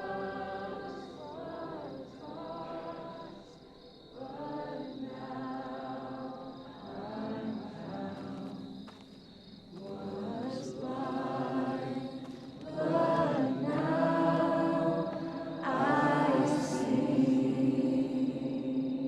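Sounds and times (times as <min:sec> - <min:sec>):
choir-like wordless vocal harmonies: 0:00.0 - 0:19.0.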